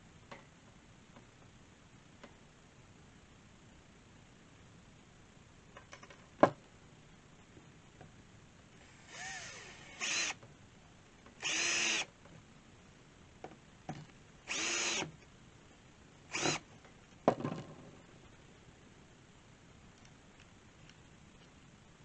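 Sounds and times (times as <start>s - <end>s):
power drill whining: 8.8s - 10.4s, 11.4s - 12.1s, 14.5s - 15.1s, 16.3s - 16.6s.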